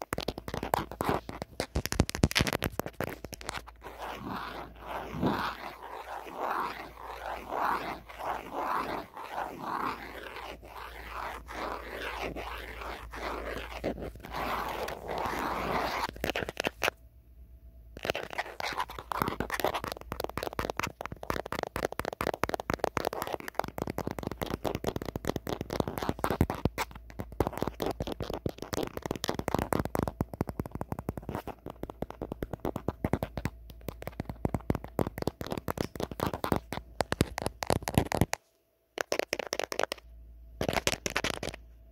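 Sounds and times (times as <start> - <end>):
fingernails scratching phone: 0.1 - 16.9, 18.0 - 38.2.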